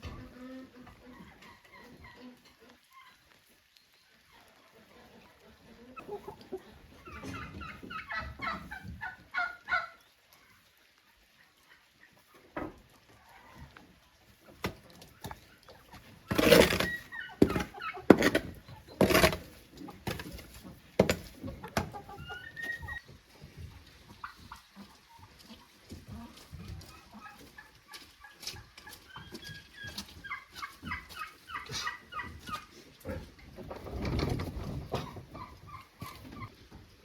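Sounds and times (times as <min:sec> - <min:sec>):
fowl clucking: 0:04.8 - 0:10.0, 0:15.2 - 0:23.2, 0:24.1 - 0:33.3.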